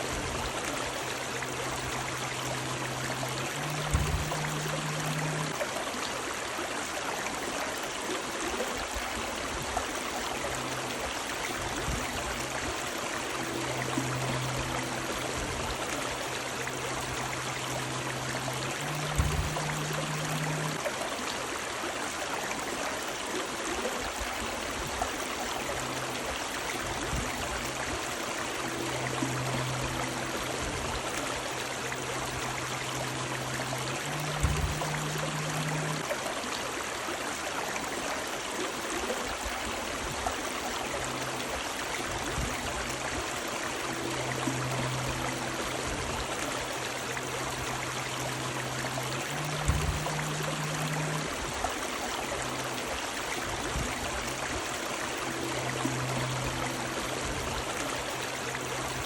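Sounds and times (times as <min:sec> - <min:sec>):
low hum: 0:00.0 - 0:06.1, 0:09.9 - 0:20.9, 0:25.2 - 0:36.2, 0:40.5 - 0:59.0
river water rushing: 0:00.0 - 0:59.0
low thump: 0:03.8 - 0:04.6, 0:49.6 - 0:50.1.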